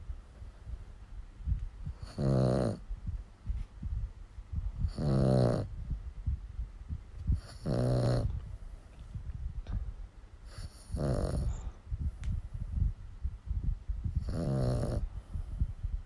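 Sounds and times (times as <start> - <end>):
dog snoring: 1.9 - 2.8, 4.8 - 5.7, 7.3 - 8.4, 10.5 - 11.7, 14.1 - 15.5.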